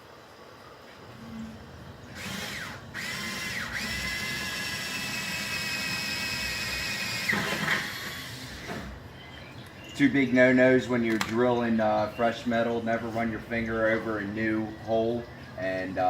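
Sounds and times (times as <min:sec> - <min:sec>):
power drill whining through metal: 0:02.1 - 0:09.0.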